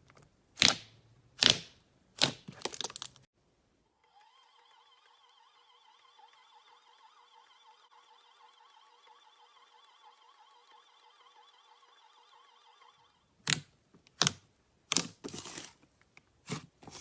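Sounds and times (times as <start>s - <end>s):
faint wavering high tone: 4.0s - 13.2s.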